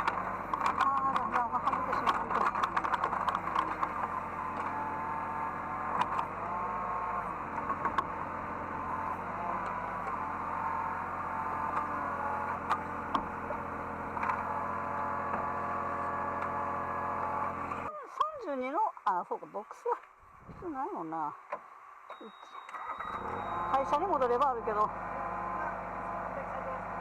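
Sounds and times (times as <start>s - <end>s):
sharp clicks or knocks: 0.0s - 4.7s
excavator engine hum: 0.0s - 18.8s, 22.0s - 27.0s
hydraulic whine: 22.0s - 27.0s.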